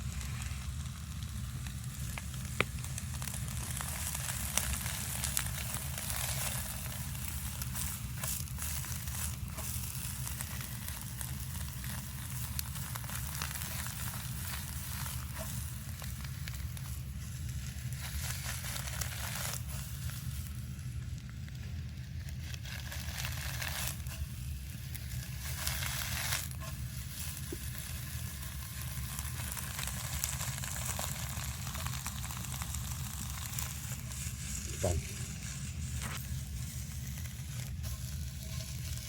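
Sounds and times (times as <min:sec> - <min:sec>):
campfire wood crackling: 0:00.0 - 0:39.0
food sizzling in a pan: 0:00.0 - 0:39.0.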